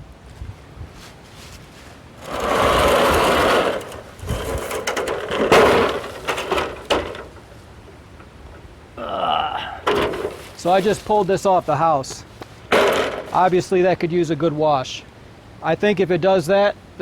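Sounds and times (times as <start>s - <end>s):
rain gutter rattling scrape: 1.3s - 9.0s, 9.8s - 14.0s
rain gutter knocks and clatters: 2.2s - 8.9s, 9.8s - 13.8s.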